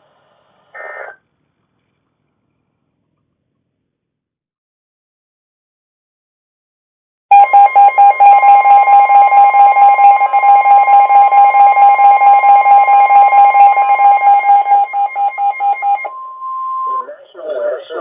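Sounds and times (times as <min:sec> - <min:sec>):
rapid electronic beeping: 0:07.3 - 0:17.1
steady warning tone: 0:07.3 - 0:17.1.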